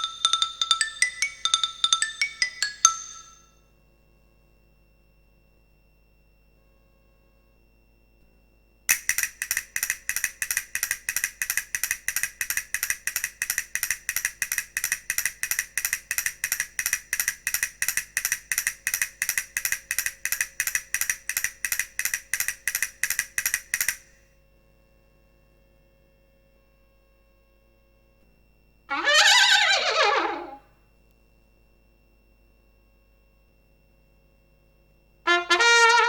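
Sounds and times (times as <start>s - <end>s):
rapid mechanical clicking: 8.9s - 24.1s.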